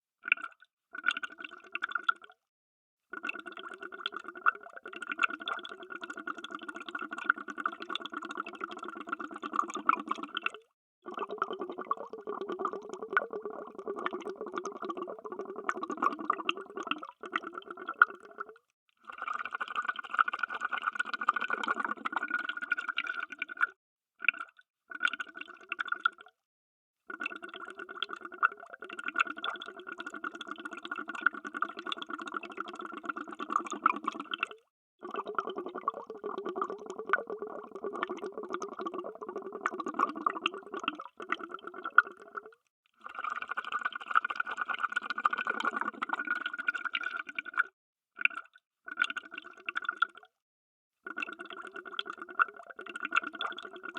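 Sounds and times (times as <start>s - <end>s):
underwater bubbling: 3.2s - 18.6s, 27.2s - 42.6s, 43.3s - 50.2s.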